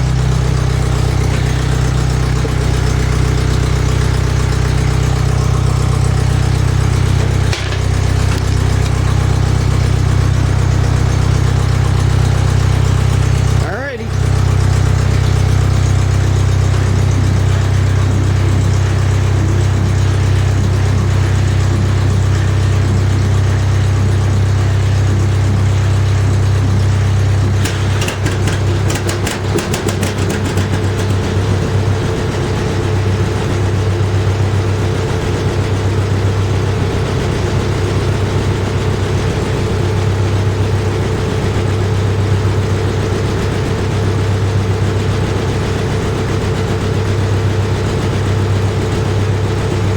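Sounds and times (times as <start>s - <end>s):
engine sharp pops: 0.0s - 20.9s, 25.0s - 34.2s
tractor engine running: 0.0s - 49.9s.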